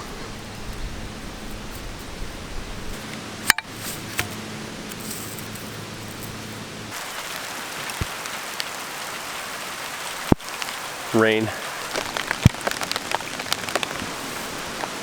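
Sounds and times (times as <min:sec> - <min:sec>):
rain hissing: 0:00.0 - 0:15.0.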